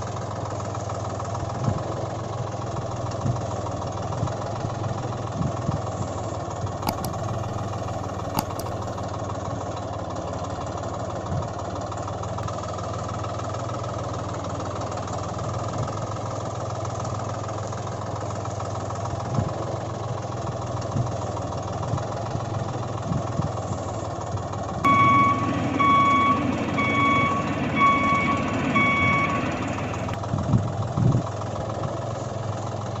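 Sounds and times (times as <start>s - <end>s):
engine running: 0.0s - 33.0s
high reversing beeps: 24.9s - 30.2s.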